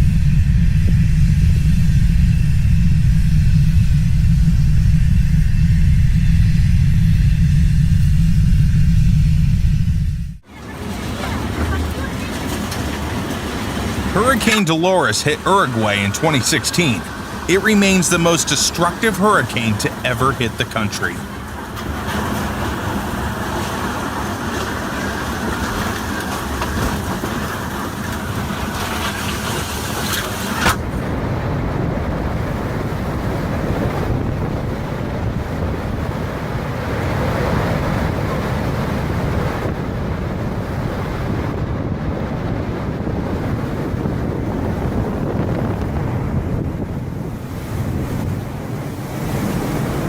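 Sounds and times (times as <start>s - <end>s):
storm wind buffeting microphone: 30.8s - 50.0s.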